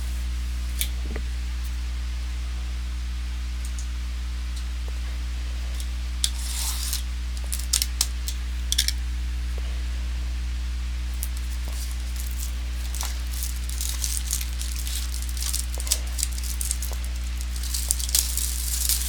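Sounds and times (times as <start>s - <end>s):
low electrical hum: 0.0s - 19.0s
wrappers crinkling and tearing: 6.3s - 8.1s, 11.1s - 19.0s.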